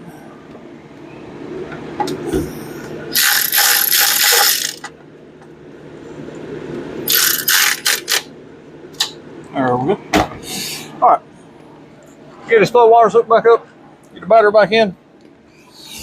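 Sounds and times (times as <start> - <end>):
ratchet wrench clicking: 3.2 - 4.9, 7.1 - 8.3.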